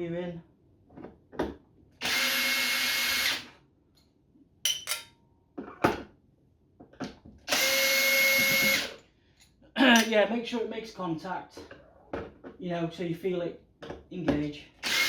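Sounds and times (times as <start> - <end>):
power drill running: 2.0 - 3.5, 7.5 - 9.0, 14.8 - 15.0.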